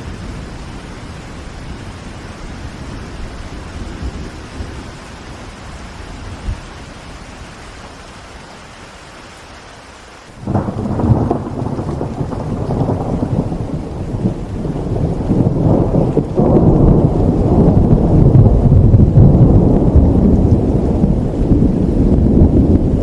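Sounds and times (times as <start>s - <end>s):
steady rain: 0.0s - 23.0s
thunder rumbling: 10.4s - 23.0s.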